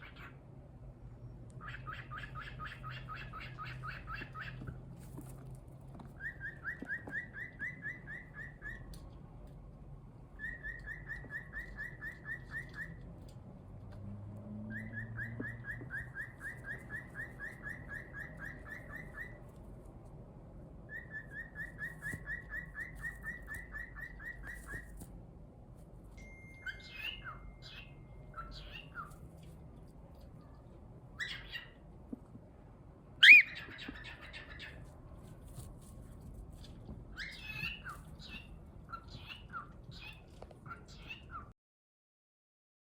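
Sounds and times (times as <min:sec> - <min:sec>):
cockatiel chirping: 0:00.0 - 0:00.4, 0:01.6 - 0:04.8, 0:06.2 - 0:09.0, 0:10.4 - 0:13.0, 0:14.7 - 0:19.5, 0:20.9 - 0:25.0, 0:26.5 - 0:29.2, 0:31.2 - 0:31.8, 0:33.2 - 0:34.9, 0:37.1 - 0:41.5.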